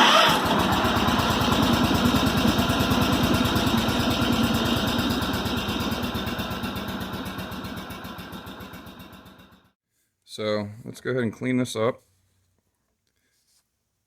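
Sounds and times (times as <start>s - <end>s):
small engine idling: 0.0s - 9.8s.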